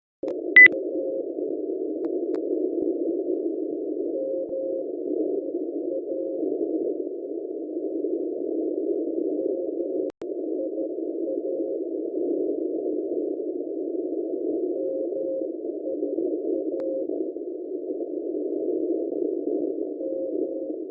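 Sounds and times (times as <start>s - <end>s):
faint morse code tone: 0.3s - 1.3s, 4.0s - 7.4s, 9.2s - 20.9s.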